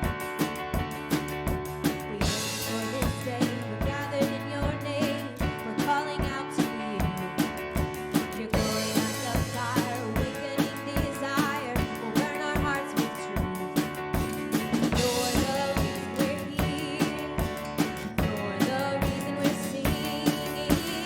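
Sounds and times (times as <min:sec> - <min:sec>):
drum kit beat: 0:00.0 - 0:21.0
worship band music: 0:00.0 - 0:21.0
voices singing: 0:15.0 - 0:21.0.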